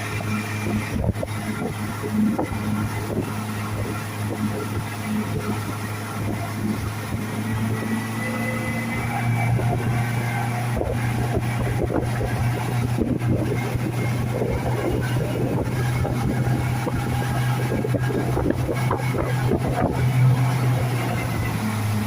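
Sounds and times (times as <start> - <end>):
speedboat engine running: 0.0 - 22.0.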